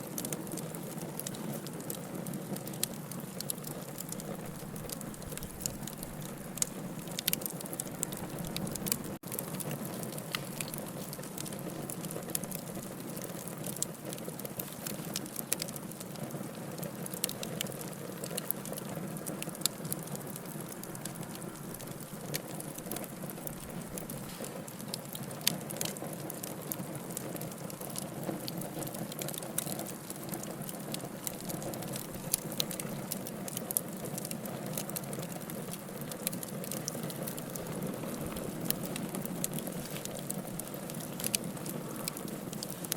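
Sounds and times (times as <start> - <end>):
campfire crackling and popping: 0.0 - 42.9.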